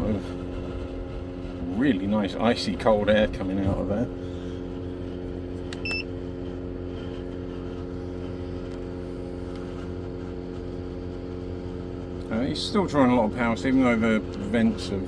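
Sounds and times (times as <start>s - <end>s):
air conditioner humming: 0.0s - 15.0s.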